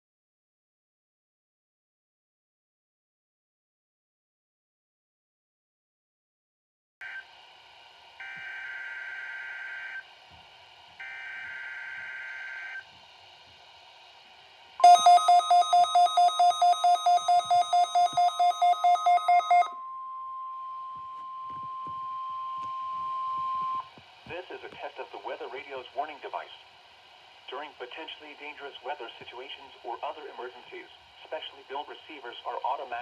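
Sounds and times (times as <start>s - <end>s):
steady warning alarm tone: 11.0s - 12.8s, 14.8s - 23.9s
electronic alarm beeping rapidly: 14.8s - 20.0s
warbling data tones: 14.8s - 23.9s.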